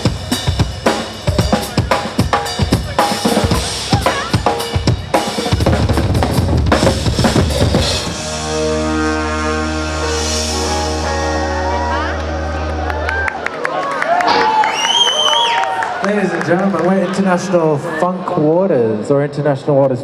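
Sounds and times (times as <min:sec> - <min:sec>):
funk music with drum kit: 0:00.0 - 0:13.5.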